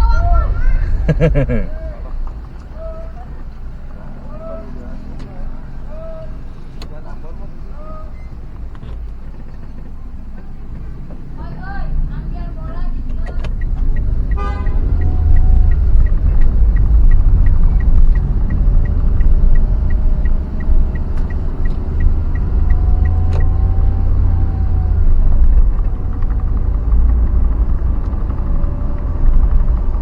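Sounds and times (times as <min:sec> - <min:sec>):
vehicle low road rumble: 0:00.0 - 0:30.0
light even ticking: 0:11.7 - 0:30.0.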